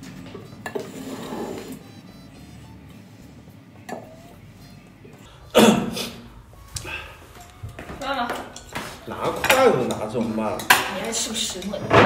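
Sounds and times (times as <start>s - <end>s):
tableware clinking: 0.6s - 1.8s, 7.3s - 12.0s
background music: 1.7s - 12.0s.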